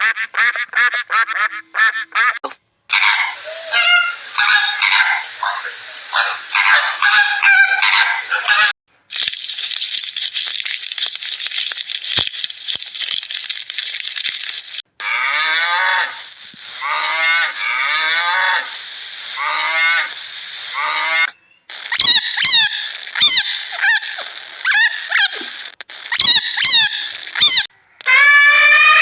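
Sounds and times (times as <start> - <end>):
dense hiss: 2.9 - 7.8, 9.1 - 24.6
animal calls sliding down: 2.9 - 29.0.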